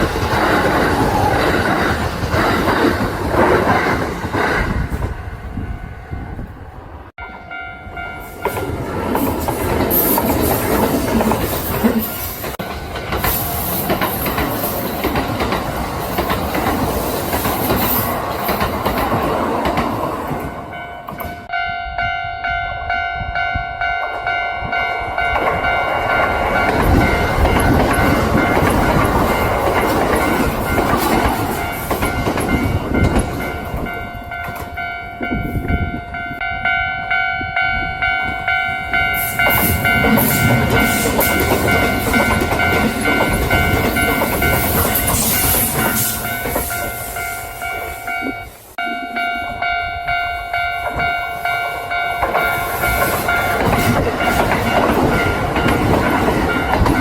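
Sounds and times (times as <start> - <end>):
train wheels clattering over rails: 0.0 - 5.2, 8.4 - 21.4, 25.2 - 34.7, 39.4 - 47.2, 51.7 - 57.0.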